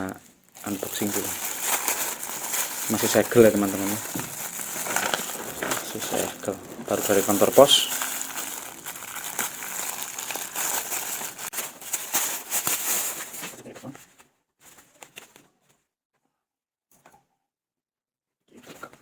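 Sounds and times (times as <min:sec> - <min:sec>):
packaging crinkling and tearing: 0:00.2 - 0:13.6.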